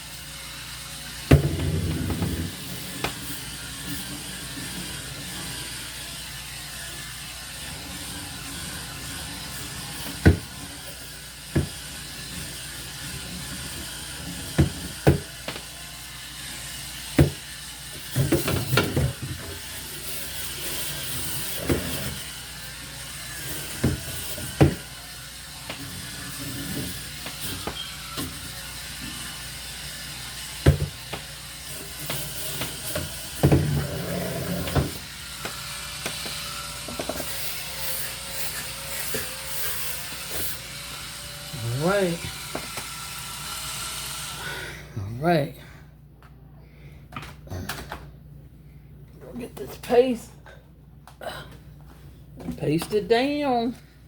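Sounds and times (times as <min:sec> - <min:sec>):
knocks and clatters of scrubbing: 0:23.6 - 0:24.9.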